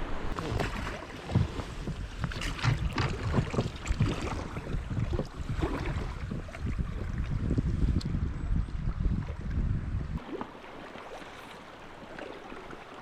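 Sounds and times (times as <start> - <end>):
river water splashing: 0.0 - 7.4, 10.2 - 13.0
wind on microphone: 0.0 - 10.4.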